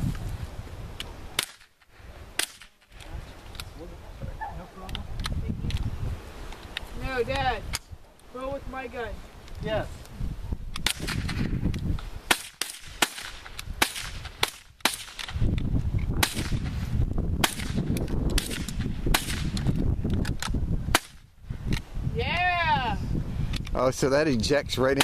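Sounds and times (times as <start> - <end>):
rifle shots: 12.3 - 15.4, 17.4 - 19.6.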